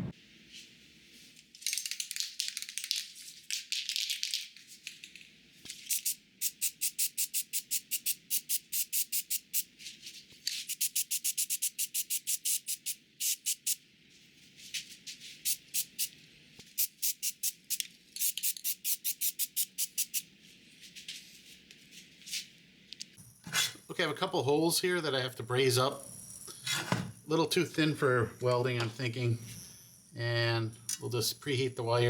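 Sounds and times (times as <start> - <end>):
spray bottle hissing: 5.7 - 9.7, 10.6 - 13.8, 15.4 - 20.3.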